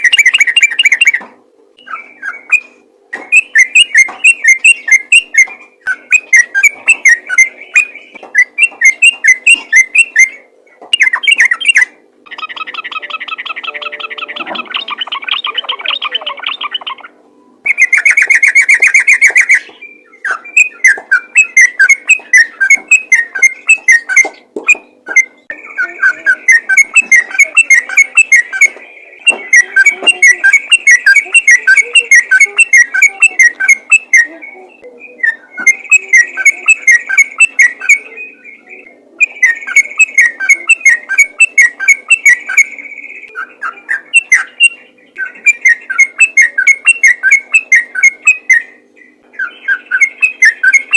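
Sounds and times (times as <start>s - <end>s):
bird singing bubbly notes: 1.8s - 50.9s.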